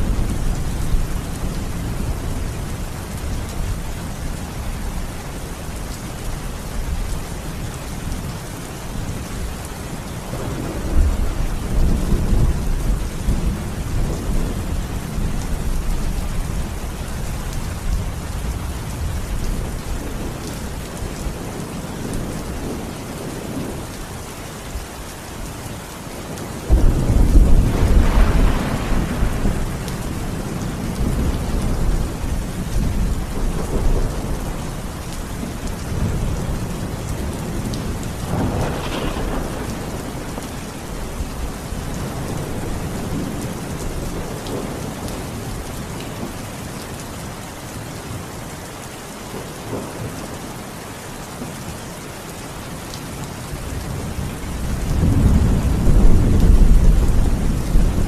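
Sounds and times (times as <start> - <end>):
heavy rain falling: 0.0 - 58.0
thunder rumbling: 10.2 - 23.9, 26.3 - 46.4, 53.8 - 58.0.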